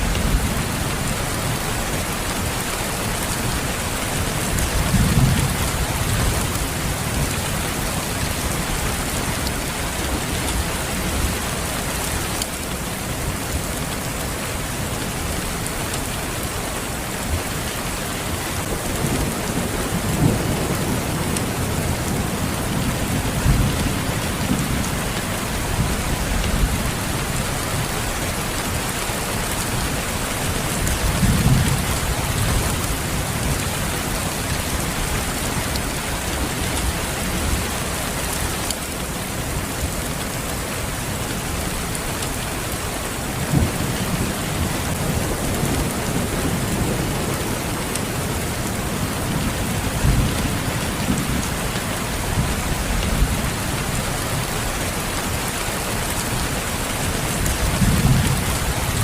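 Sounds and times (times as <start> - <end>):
rain falling: 0.0 - 59.0.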